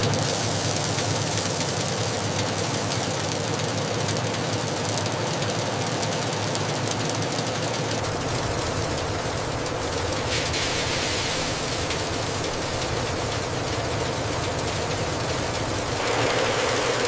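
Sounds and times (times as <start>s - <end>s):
factory machinery din: 8.0s - 17.0s
faint hum: 8.0s - 17.0s.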